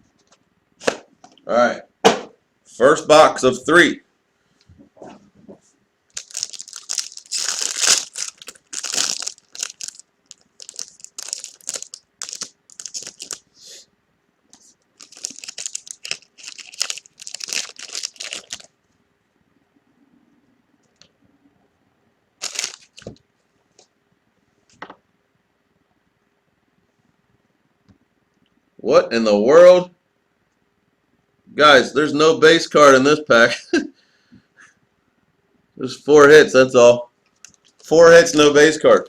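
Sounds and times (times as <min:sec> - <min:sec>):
plastic and paper wrapping tearing: 0:06.1 - 0:13.5, 0:15.0 - 0:18.7, 0:22.4 - 0:23.2.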